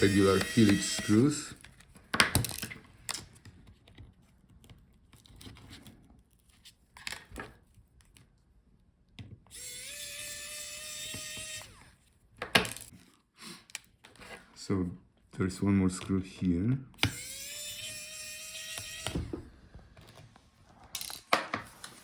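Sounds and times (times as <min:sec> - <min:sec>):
electric screwdriver whine: 0:00.0 - 0:01.6, 0:09.5 - 0:11.9, 0:17.0 - 0:19.5.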